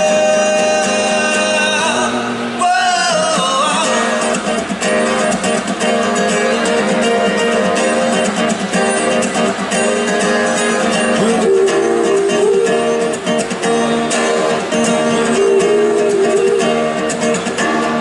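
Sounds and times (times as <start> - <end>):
guitar with bending notes: 0.0 - 18.0
live band playing: 3.9 - 18.0.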